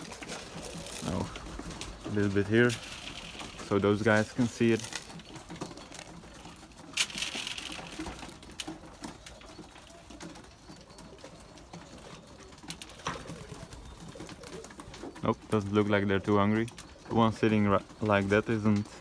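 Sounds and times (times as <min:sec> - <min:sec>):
rustling burst: 0:00.0 - 0:08.6
pigeons cooing: 0:00.0 - 0:19.0.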